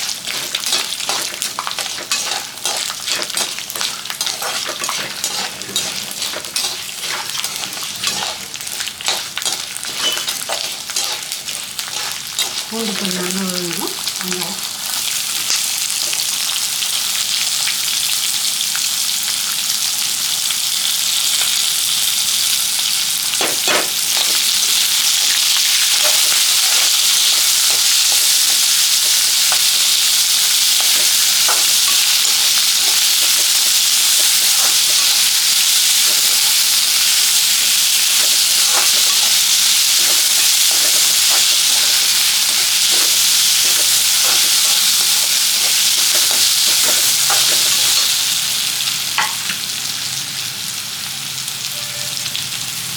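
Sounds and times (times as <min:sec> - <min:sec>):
garlic sizzling in hot oil: 0:00.0 - 0:52.9
spoon scraping and knocking: 0:00.3 - 0:11.3, 0:30.8 - 0:35.3, 0:37.6 - 0:48.1.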